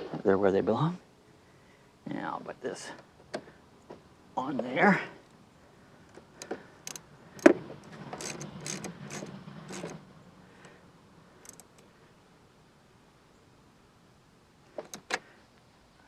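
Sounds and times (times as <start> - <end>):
light rattle: 6.0 - 12.0
tools being handled: 6.1 - 10.0, 11.4 - 11.9.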